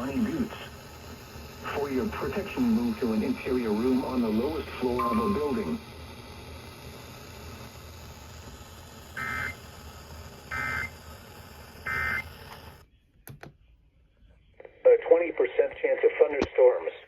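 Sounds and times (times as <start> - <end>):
buzzy data bursts: 0.0 - 11.2, 11.8 - 12.4
radio hiss: 0.0 - 12.8, 14.6 - 17.0.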